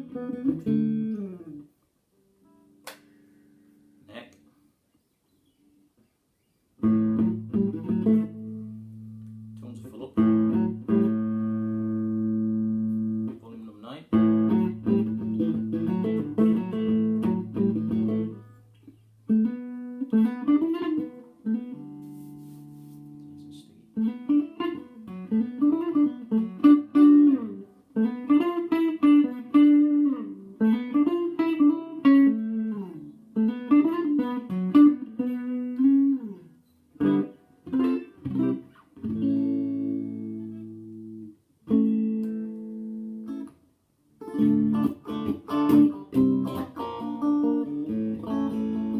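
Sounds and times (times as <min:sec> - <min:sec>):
electric guitar playing: 0:00.0 - 0:04.2, 0:06.8 - 0:13.4, 0:14.1 - 0:48.9.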